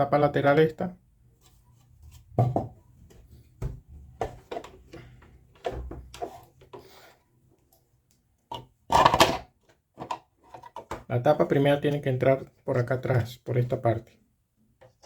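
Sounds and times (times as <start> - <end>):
plastic clatter: 8.5 - 11.1
plastic clicks and knocks: 8.5 - 11.1.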